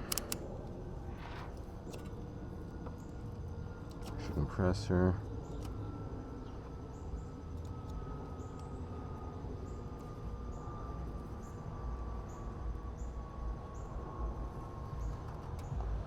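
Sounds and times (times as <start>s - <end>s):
faint thin whine: 0.0s - 16.0s
steady low rumble: 0.0s - 16.0s.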